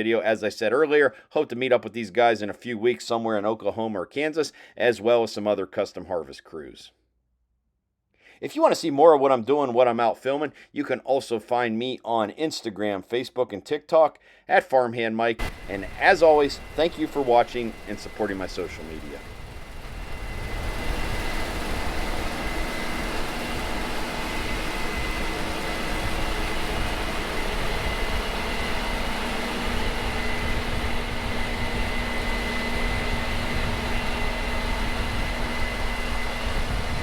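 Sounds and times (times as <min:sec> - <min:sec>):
harvest machinery engine drone: 0:15.4 - 0:37.0
high machine whine: 0:15.4 - 0:37.0.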